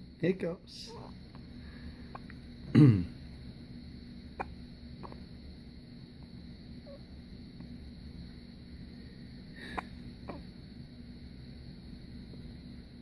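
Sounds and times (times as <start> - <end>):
baby hiccuping: 4.4 - 5.2.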